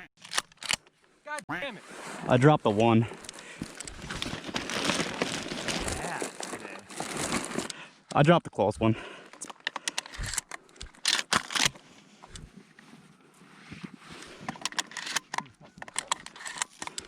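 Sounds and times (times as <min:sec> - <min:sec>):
gear rustling and clicking: 0:03.1 - 0:07.8, 0:09.2 - 0:12.5, 0:14.2 - 0:17.0.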